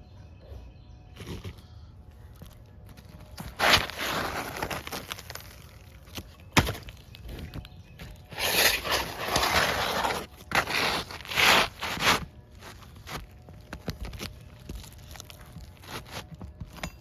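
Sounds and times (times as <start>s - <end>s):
scraping and crunching handling noise: 1.2s - 17.0s.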